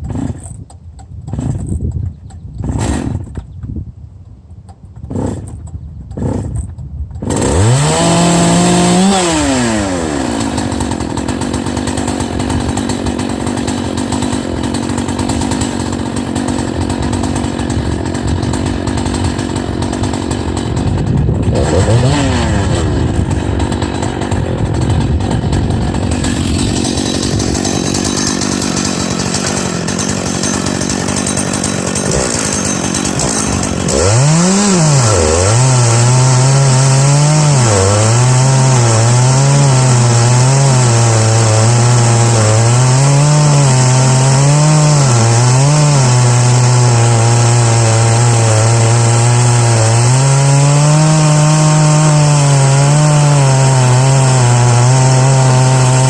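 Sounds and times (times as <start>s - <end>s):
chainsaw cutting log: 0.0s - 3.5s, 4.8s - 56.0s.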